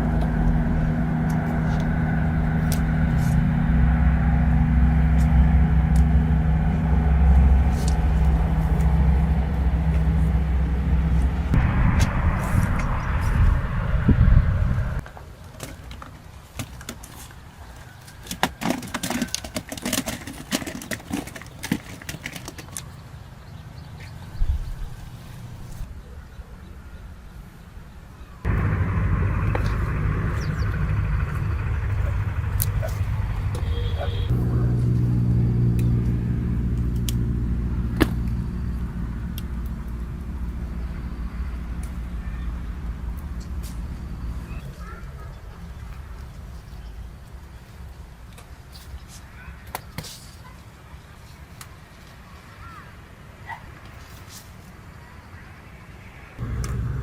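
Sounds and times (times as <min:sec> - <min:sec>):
loud rushing noise: 0:00.0 - 0:15.0, 0:28.5 - 0:37.9
vehicle engine humming: 0:00.0 - 0:15.2, 0:28.4 - 0:48.2, 0:56.4 - 0:57.0.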